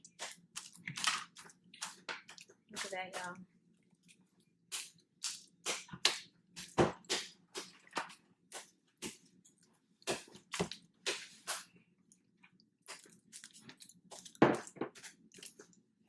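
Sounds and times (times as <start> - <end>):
slime squelching: 0.0 - 16.0.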